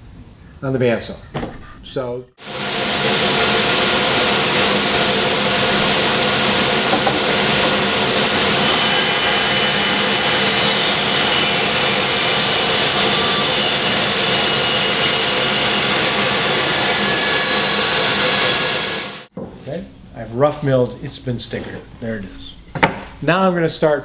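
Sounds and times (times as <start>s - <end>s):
bandsaw sawing a board: 2.4s - 19.3s.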